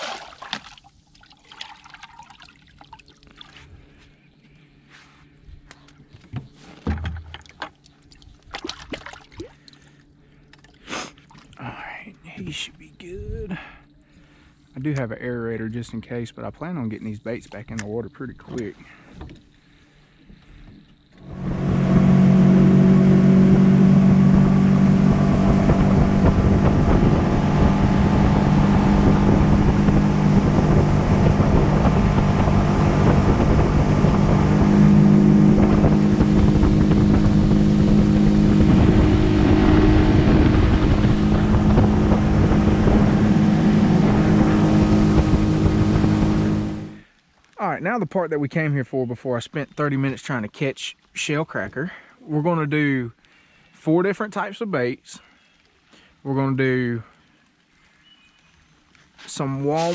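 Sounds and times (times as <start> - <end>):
outboard motor running: 0.0 - 11.8, 18.4 - 47.1.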